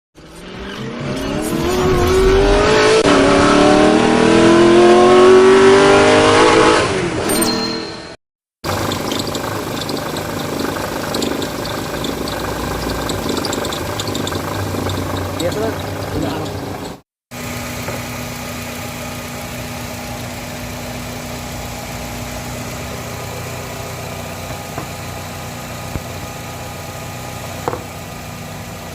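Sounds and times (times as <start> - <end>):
engine belt squealing: 8.6 - 28.9.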